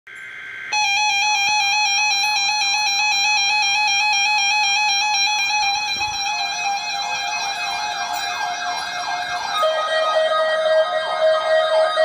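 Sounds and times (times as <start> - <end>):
high-pitched alert tone with chirps: 4.8 - 9.9.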